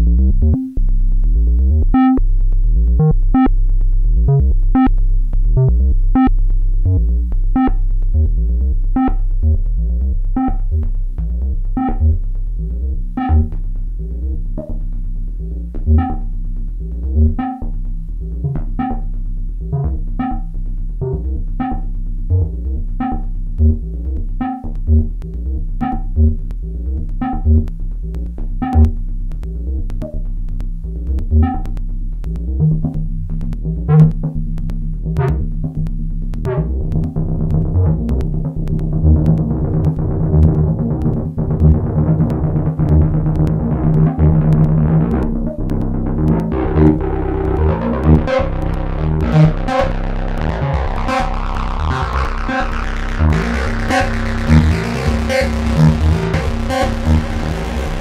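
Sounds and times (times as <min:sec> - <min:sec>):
synthesizer low bass: 0:00.0 - 0:58.0
synthesizer plucked notes: 0:00.0 - 0:58.0
held low synth note: 0:30.9 - 0:58.0.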